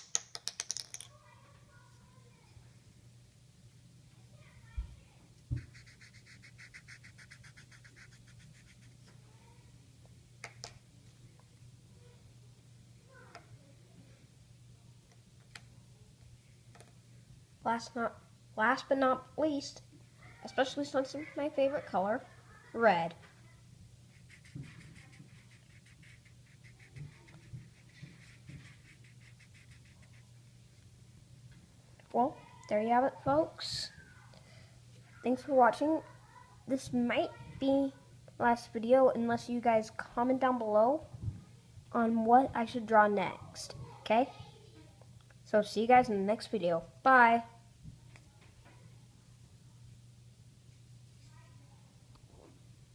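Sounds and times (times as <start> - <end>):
marker scribbling on paper: 5.6 - 9.0, 24.1 - 30.4.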